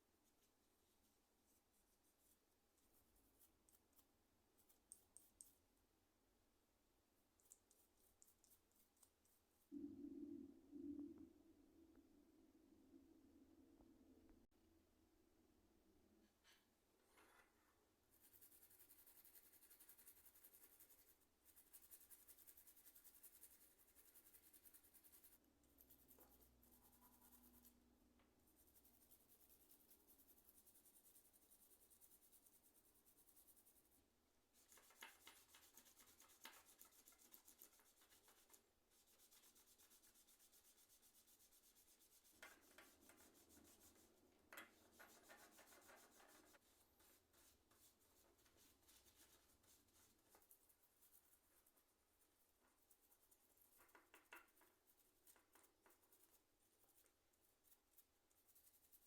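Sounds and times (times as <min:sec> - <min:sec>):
rubbing and scrubbing keyboard: 0:18.1 - 0:27.7, 0:28.5 - 0:34.0, 0:34.6 - 0:59.0.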